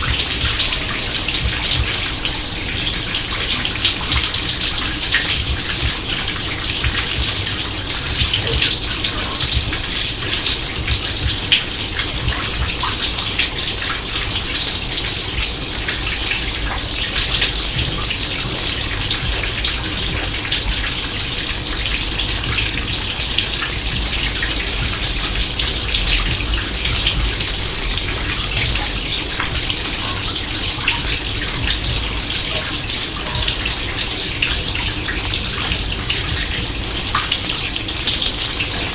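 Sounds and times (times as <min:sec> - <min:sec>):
water running into sink: 0:00.0 - 0:38.9.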